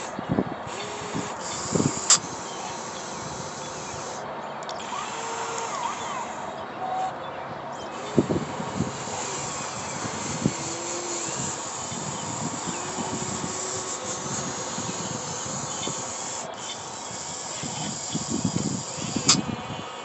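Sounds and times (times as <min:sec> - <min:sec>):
steady hiss: 0:00.8 - 0:04.2, 0:08.0 - 0:20.0.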